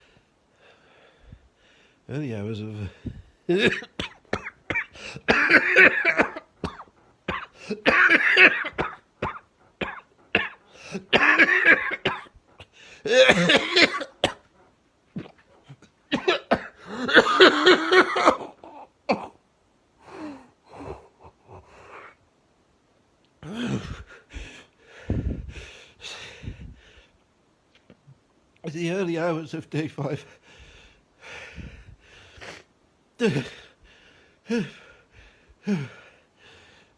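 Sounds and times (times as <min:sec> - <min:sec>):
man coughing harshly: 0:03.5 - 0:12.3, 0:13.1 - 0:14.4, 0:16.1 - 0:19.4, 0:33.2 - 0:33.7.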